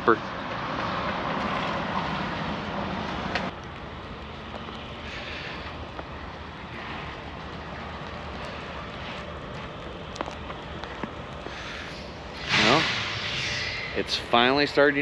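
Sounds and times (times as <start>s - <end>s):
vehicle driving: 0.0s - 15.0s.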